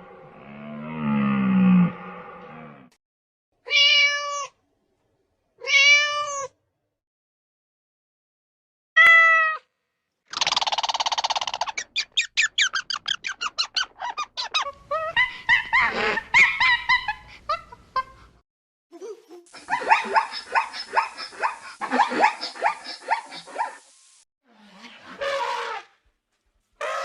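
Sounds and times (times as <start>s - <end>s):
squeaky animal chirps and yelps: 10.3s - 18.1s, 19.4s - 23.8s.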